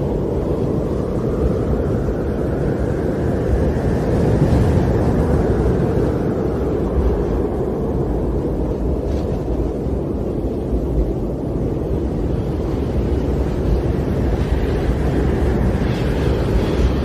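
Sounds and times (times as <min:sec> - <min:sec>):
snowstorm wind blowing: 0:00.0 - 0:17.0.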